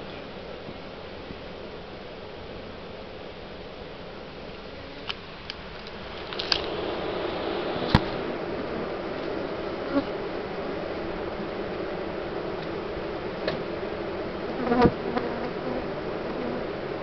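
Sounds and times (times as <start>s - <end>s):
honeybee colony buzzing: 4.6s - 17.0s.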